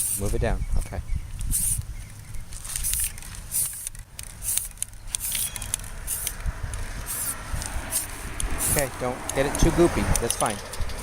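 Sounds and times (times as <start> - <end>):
spray paint can hissing: 0.0 - 0.3, 1.4 - 1.9, 2.7 - 6.4, 7.0 - 9.0.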